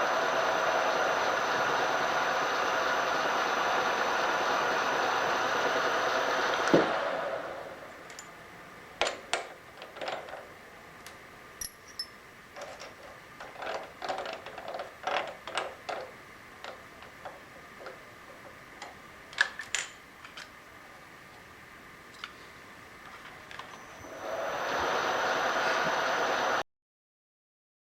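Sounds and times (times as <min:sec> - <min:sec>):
metallic clicks and knocks of tools: 0:11.6 - 0:18.0.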